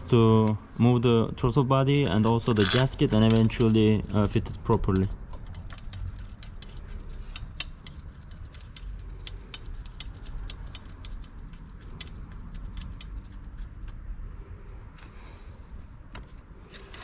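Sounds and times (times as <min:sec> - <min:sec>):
metallic clicks of hand tools: 0:04.8 - 0:13.2.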